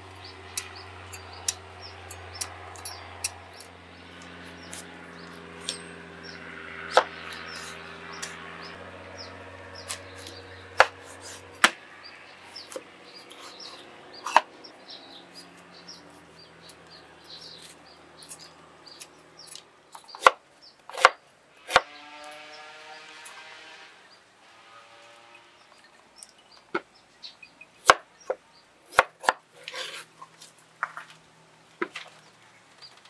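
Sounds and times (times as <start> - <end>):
knife chopping on a board: 10.8 - 11.8, 20.2 - 21.9, 28.9 - 30.0.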